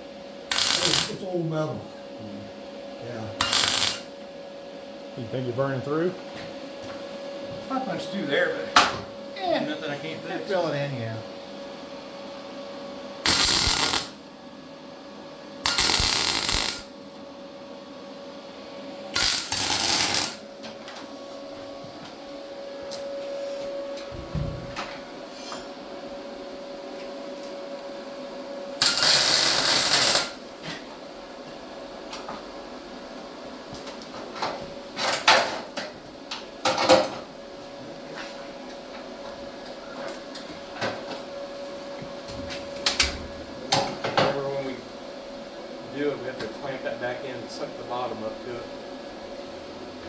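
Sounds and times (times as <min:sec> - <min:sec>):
steady hum: 0:00.0 - 0:50.0
welding arc sizzling: 0:00.5 - 0:01.4, 0:03.4 - 0:04.2, 0:13.2 - 0:14.3, 0:15.6 - 0:17.0, 0:19.1 - 0:20.5, 0:28.8 - 0:30.5.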